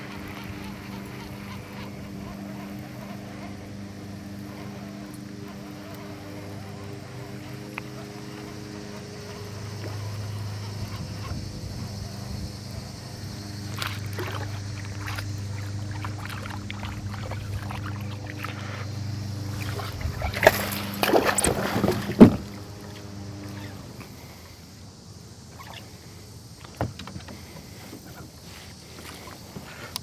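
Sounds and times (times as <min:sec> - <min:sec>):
steady low hum: 0:00.0 - 0:30.0
gear knocking on kayak: 0:19.6 - 0:22.6.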